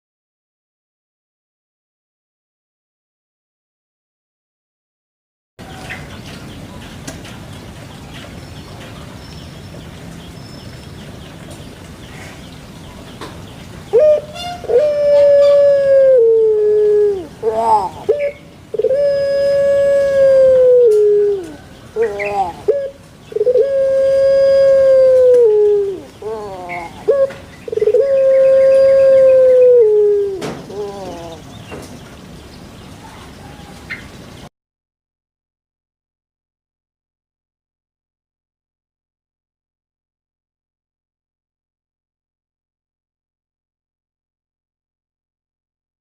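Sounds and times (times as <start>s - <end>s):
dove cooing: 13.9s - 31.5s.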